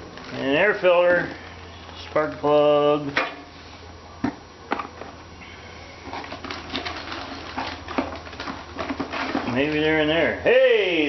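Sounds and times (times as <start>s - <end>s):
steady low hum: 0.0s - 11.0s
parts and packaging rustling: 6.0s - 10.1s.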